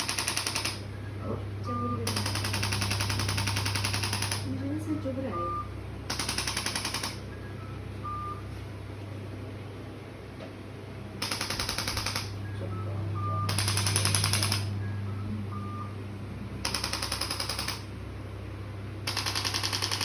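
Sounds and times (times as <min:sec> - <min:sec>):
rapid mechanical rattling: 0:00.0 - 0:00.8, 0:06.1 - 0:07.2, 0:11.2 - 0:12.4, 0:16.6 - 0:17.9, 0:19.0 - 0:20.0
steady low hum: 0:00.0 - 0:20.0.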